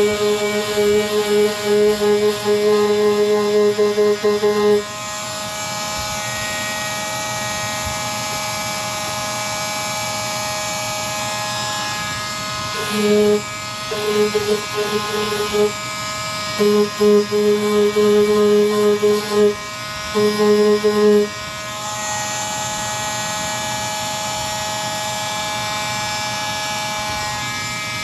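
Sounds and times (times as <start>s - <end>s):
electric power sander running: 0.0s - 28.0s.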